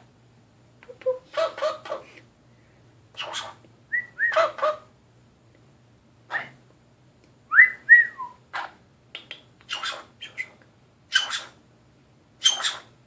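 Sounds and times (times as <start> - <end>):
parrot scratchy chirps: 1.3 - 2.2, 3.2 - 3.6, 8.5 - 11.6, 12.4 - 12.9
parrot whistled calls: 3.2 - 4.8, 9.7 - 10.5, 11.1 - 11.6, 12.4 - 12.9.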